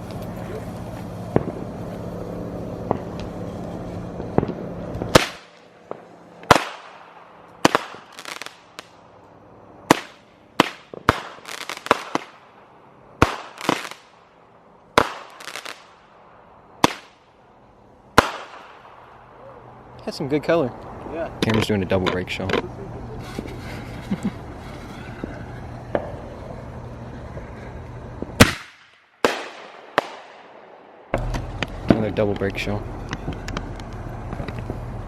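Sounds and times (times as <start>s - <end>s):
low hum: 0.0s - 7.6s, 16.0s - 28.4s, 30.5s - 35.0s
firework bangs with echo: 1.3s - 1.8s, 2.8s - 3.3s, 4.2s - 9.0s, 9.9s - 12.5s, 13.2s - 14.1s, 15.0s - 16.0s, 16.8s - 17.3s, 18.2s - 19.2s, 24.9s - 26.3s, 28.2s - 32.1s.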